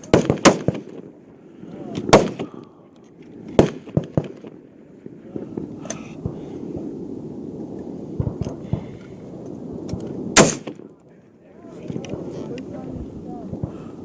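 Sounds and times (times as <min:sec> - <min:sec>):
rifle shots: 0:00.0 - 0:01.1, 0:02.1 - 0:02.6, 0:03.5 - 0:04.6, 0:09.9 - 0:10.9.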